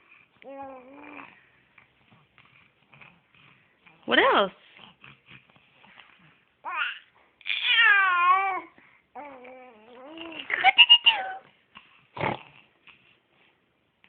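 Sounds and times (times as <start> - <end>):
baby cooing and babbling: 0.4 - 1.5, 6.6 - 11.5.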